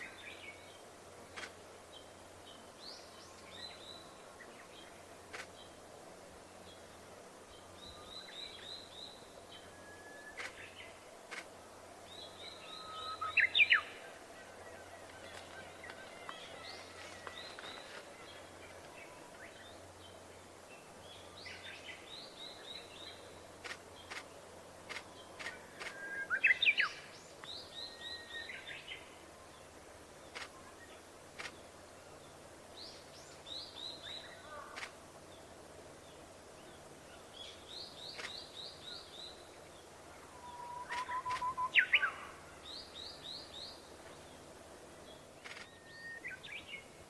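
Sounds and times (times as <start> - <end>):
bird singing whistles: 25.9 - 26.9, 40.4 - 42.2.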